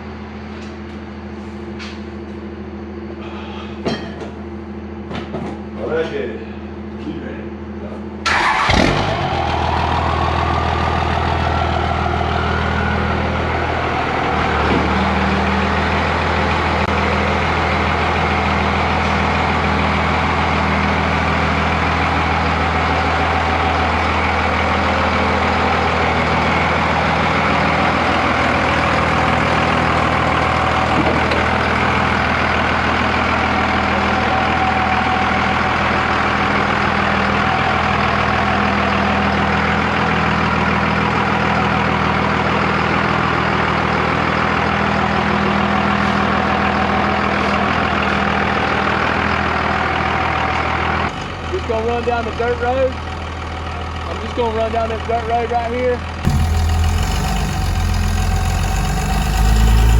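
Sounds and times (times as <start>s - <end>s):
faint turbo whine: 0.0s - 37.0s, 55.8s - 59.9s
diesel engine idling: 4.4s - 59.9s
thump: 56.3s - 59.3s.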